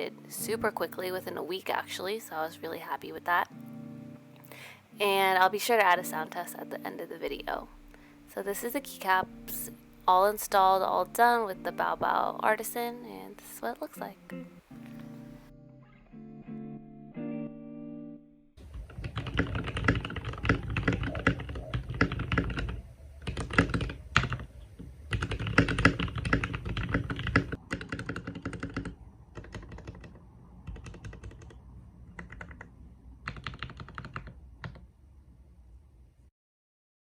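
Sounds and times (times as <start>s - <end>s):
typing on mechanical keyboard: 18.6s - 34.8s.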